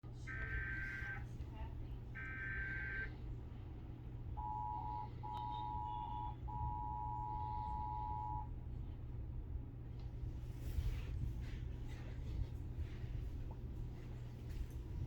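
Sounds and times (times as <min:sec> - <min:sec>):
low steady hum: 0:00.0 - 0:15.0
two-tone alert signal: 0:04.4 - 0:08.5.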